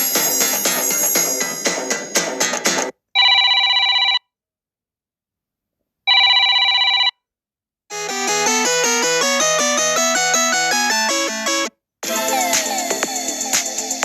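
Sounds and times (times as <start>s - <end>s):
melodic phone ringtone: 3.2s - 4.2s, 6.1s - 7.2s, 7.9s - 12.6s
telephone ring: 3.2s - 4.3s, 6.1s - 7.3s.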